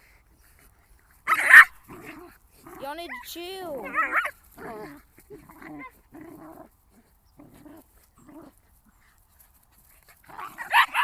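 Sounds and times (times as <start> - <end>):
dogs fighting: 1.2 - 11.0.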